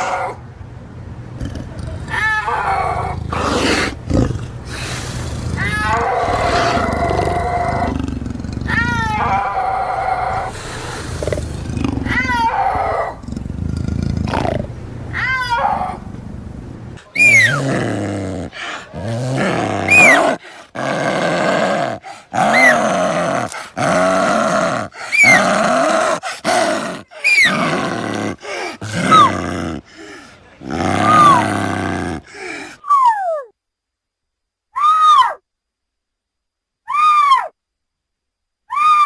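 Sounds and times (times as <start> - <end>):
big cat yowling calls: 1.6 - 4.8, 5.4 - 13.3, 14.2 - 16.2, 17.0 - 33.4.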